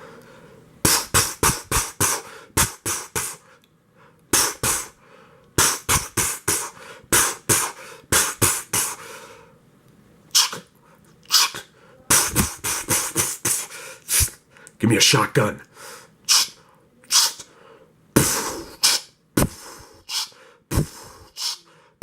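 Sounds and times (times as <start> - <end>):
person imitating gunfire with mouth: 0.8 - 3.4, 4.3 - 4.9, 5.6 - 9.0, 10.3 - 10.7, 11.3 - 14.4, 16.3 - 17.5, 18.2 - 21.6.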